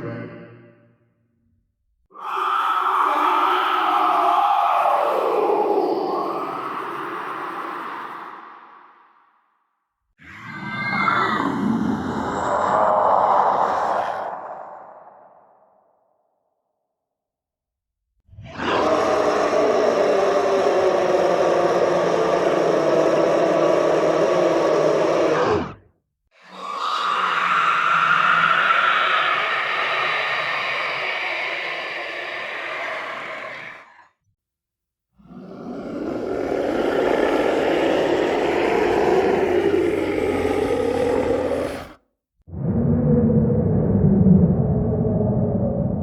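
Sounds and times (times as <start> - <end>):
monster growl: 2.1 - 9.0, 18.4 - 25.8, 26.4 - 34.2, 35.2 - 46.0
creature sound: 2.1 - 9.5, 18.4 - 25.8, 26.4 - 34.2, 35.2 - 46.0.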